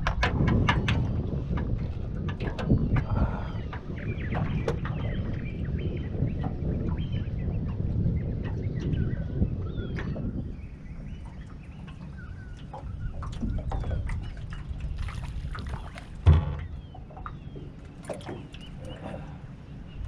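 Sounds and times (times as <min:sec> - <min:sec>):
wind and water rumble: 0:00.0 - 0:20.0
loud hollow knock: 0:16.2 - 0:16.8
small birds chirping: 0:16.6 - 0:20.0.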